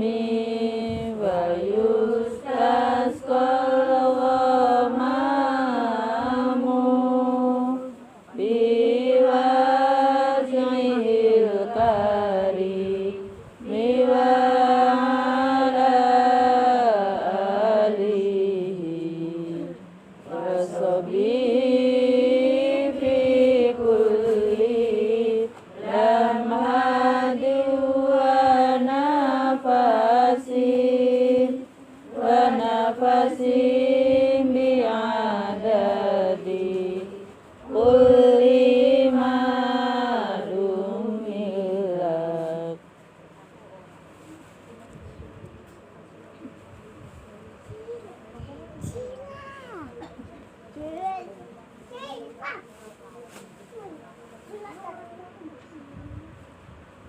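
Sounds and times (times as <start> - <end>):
person chanting melodically: 0.0 - 42.8.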